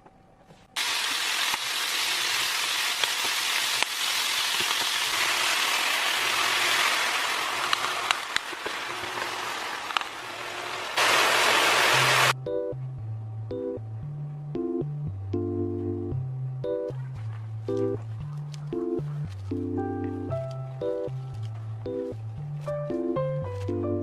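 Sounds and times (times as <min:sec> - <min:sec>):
bacon sizzling in a frying pan: 0:00.8 - 0:12.4.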